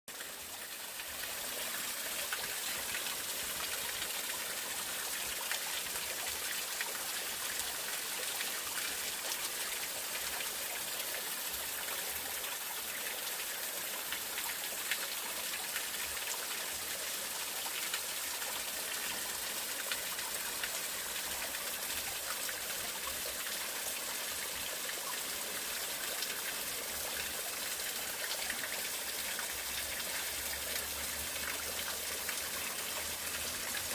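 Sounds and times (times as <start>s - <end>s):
stream water rushing and splashing: 0.1s - 33.9s.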